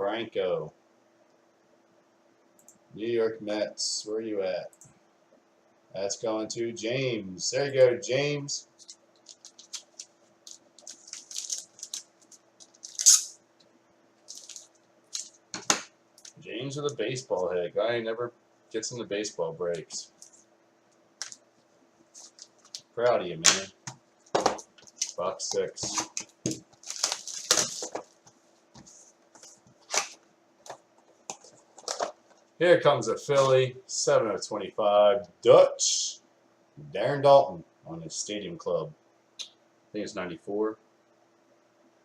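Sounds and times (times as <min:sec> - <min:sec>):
trading cards crinkling and rustling: 0:08.7 - 0:13.4, 0:14.2 - 0:16.4, 0:21.2 - 0:21.5, 0:22.1 - 0:22.9, 0:23.6 - 0:32.5.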